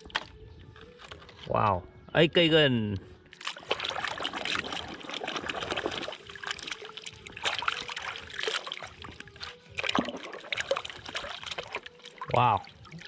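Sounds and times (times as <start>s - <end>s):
water trickling and splashing: 3.3s - 13.0s.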